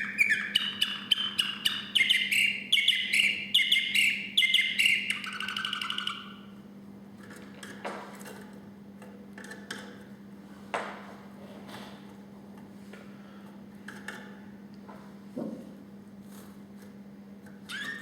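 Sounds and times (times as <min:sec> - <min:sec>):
canary singing: 0:00.0 - 0:06.6, 0:17.6 - 0:18.0.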